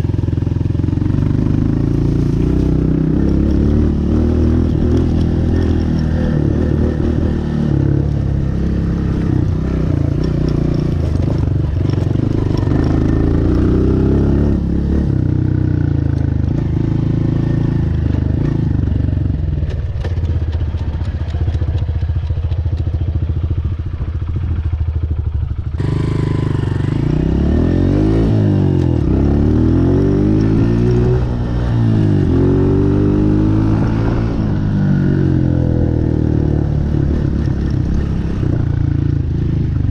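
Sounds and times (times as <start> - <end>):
dirt bike engine revving: 0.8 - 15.8, 25.8 - 38.6.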